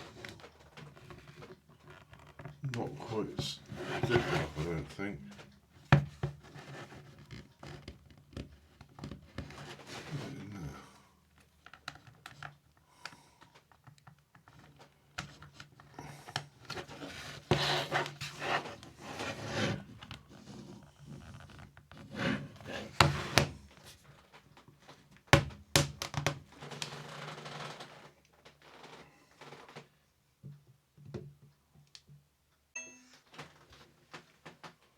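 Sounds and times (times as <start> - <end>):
plastic pick scraping plastic case: 0.0 - 10.3.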